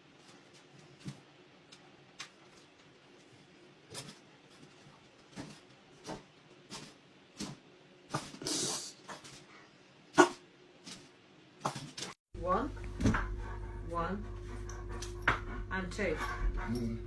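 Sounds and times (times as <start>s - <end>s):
animal hissing: 8.1s - 9.1s, 10.2s - 10.4s.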